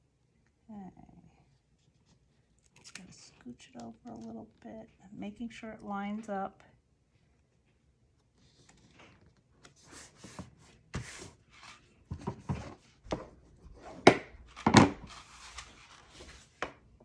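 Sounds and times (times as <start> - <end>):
cardstock rustling: 14.0 - 16.8.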